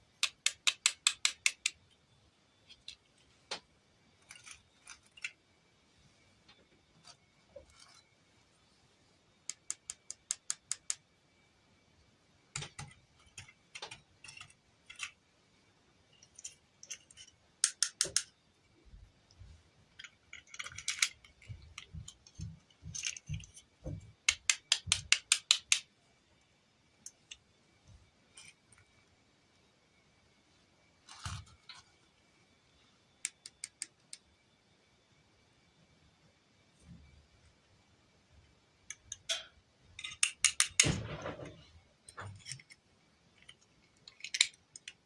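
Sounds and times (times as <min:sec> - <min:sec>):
small hard objects clicking: 0:00.1 - 0:02.0, 0:09.5 - 0:11.0, 0:16.2 - 0:18.3, 0:20.0 - 0:25.9, 0:33.2 - 0:34.3, 0:40.0 - 0:40.9, 0:43.4 - 0:45.0.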